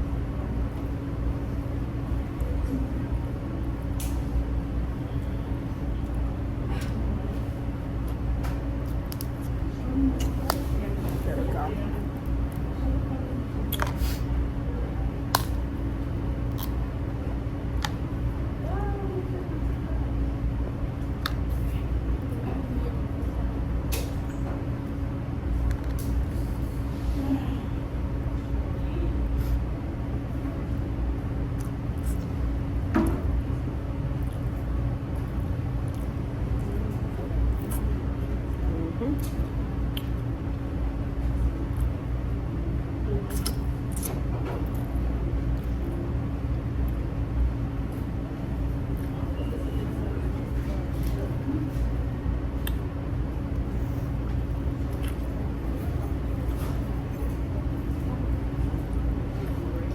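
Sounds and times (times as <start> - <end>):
steady low hum: 0.0 - 59.9
crab legs cracking: 15.3 - 15.7, 16.5 - 16.8.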